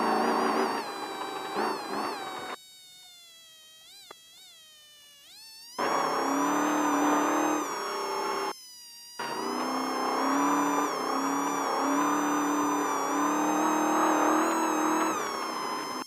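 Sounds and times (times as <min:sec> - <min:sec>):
vehicle engine inside cabin: 0:00.0 - 0:02.6, 0:05.8 - 0:08.5, 0:09.2 - 0:16.0.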